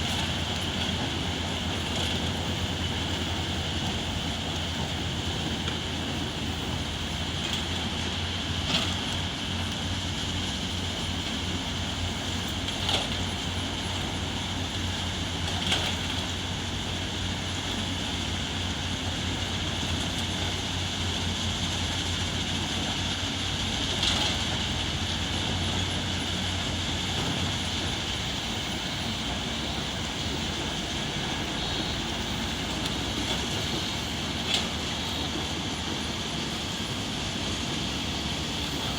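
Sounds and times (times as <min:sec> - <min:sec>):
diesel engine drone: 0:00.0 - 0:38.9
high steady whine: 0:25.4 - 0:38.9.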